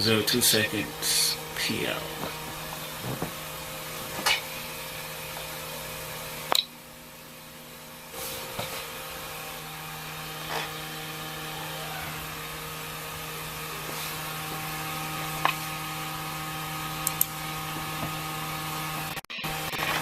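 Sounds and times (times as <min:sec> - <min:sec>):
disc drive whirring: 0:00.0 - 0:20.0.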